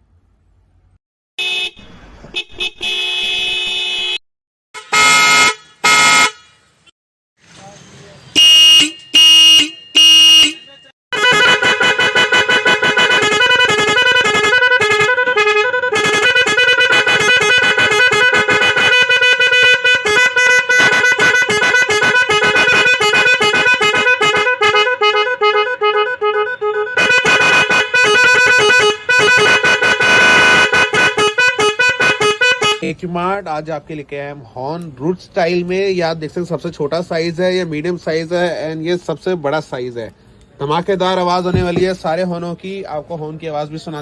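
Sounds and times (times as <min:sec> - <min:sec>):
electronic musical motorcycle horn: 0:01.4 - 0:04.2, 0:04.8 - 0:06.9, 0:08.4 - 0:32.8, 0:41.5 - 0:42.0.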